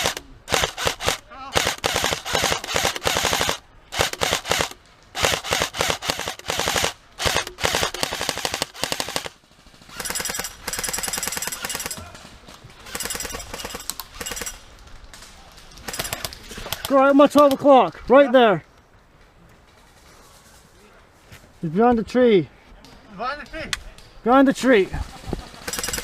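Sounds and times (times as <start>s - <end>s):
airsoft rifles firing bursts: 0.0s - 14.7s, 15.8s - 17.5s, 25.0s - 26.0s.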